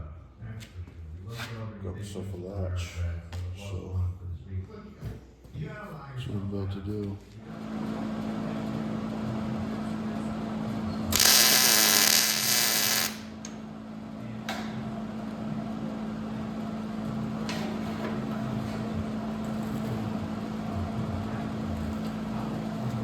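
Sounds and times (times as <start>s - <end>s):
handheld power tool whirring: 11.1s - 13.4s.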